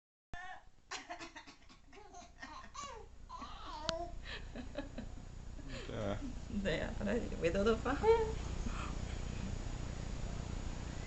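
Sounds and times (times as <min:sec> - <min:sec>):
baby babbling and laughing: 0:01.9 - 0:04.2.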